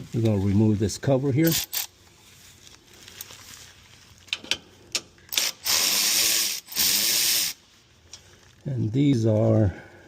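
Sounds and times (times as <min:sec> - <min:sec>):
power tool whirring: 0:05.3 - 0:07.6.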